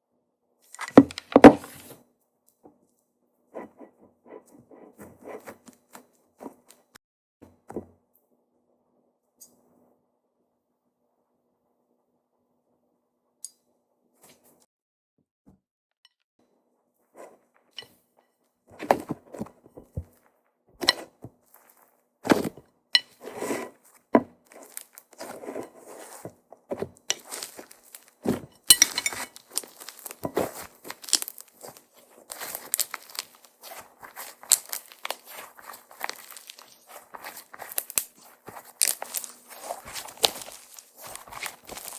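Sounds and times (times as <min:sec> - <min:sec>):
slime squishing and popping: 0:28.7 - 0:41.9.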